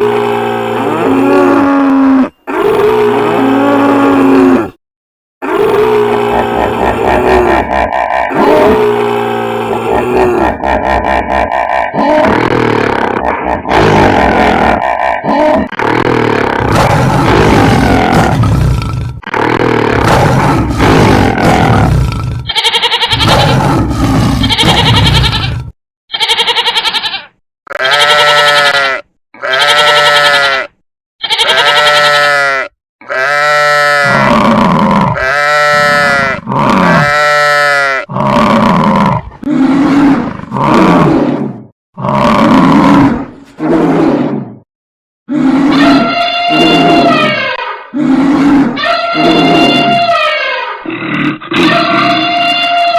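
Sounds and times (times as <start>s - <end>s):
cartoon roaring and grunting: 0.0s - 4.8s, 5.4s - 25.8s, 31.4s - 44.7s, 45.3s - 52.9s
cartoon animal calls: 5.4s - 18.5s, 19.3s - 34.4s, 45.4s - 52.9s.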